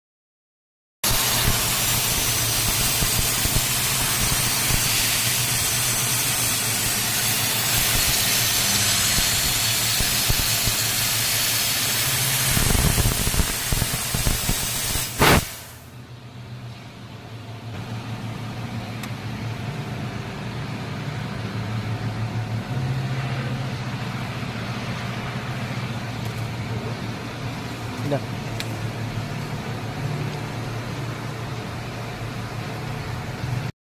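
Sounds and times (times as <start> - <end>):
laser cutting machine hiss: 1.0 - 16.0
low machine hum: 15.8 - 33.7.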